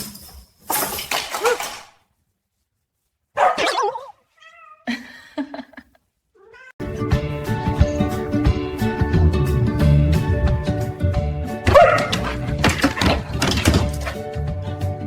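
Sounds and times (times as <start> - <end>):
cat meowing and yowling: 3.6 - 4.9, 6.4 - 6.8
music with a beat: 6.8 - 15.0.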